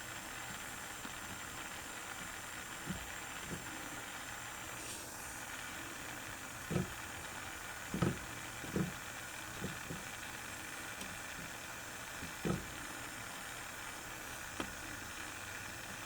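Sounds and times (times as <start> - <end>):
gas flame hissing: 0.0 - 16.0
soft low thumps: 12.2 - 12.8.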